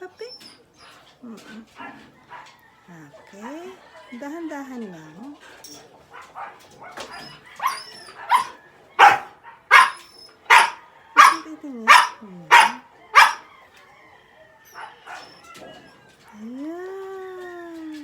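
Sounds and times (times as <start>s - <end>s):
dog barking: 1.8s - 2.6s, 6.0s - 13.5s, 14.7s - 15.4s.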